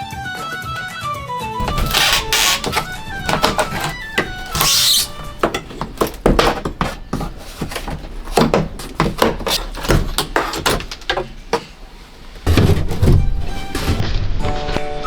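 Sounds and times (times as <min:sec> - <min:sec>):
knocks and taps on wood: 0:01.6 - 0:11.8.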